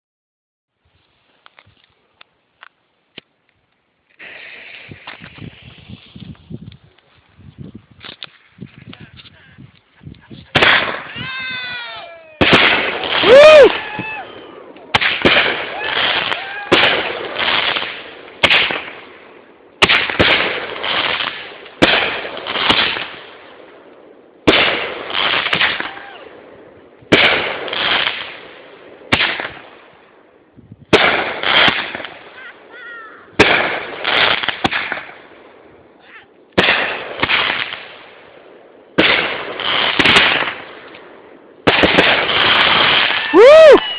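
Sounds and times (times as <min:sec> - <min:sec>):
fireworks pops and crackle: 0:01.0 - 0:11.6, 0:12.4 - 0:30.2, 0:30.8 - 0:32.7, 0:33.4 - 0:43.9
fireworks reports: 0:08.1 - 0:23.4, 0:24.4 - 0:29.6, 0:30.8 - 0:35.2, 0:35.8 - 0:38.0, 0:41.6 - 0:43.9.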